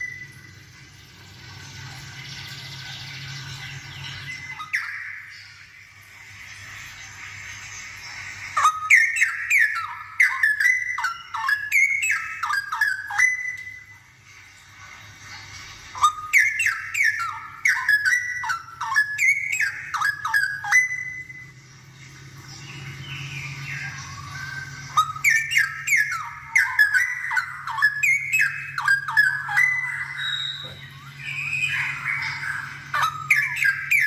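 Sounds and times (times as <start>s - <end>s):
bird singing bubbling whistled notes: 0.0s - 14.7s, 15.8s - 34.0s.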